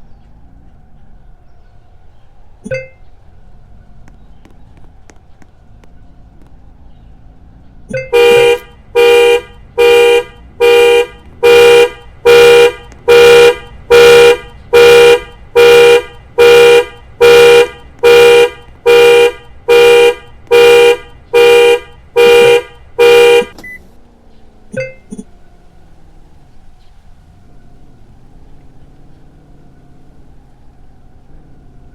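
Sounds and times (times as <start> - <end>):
car horn honks: 2.6 - 3.0, 7.9 - 23.8, 24.8 - 25.2.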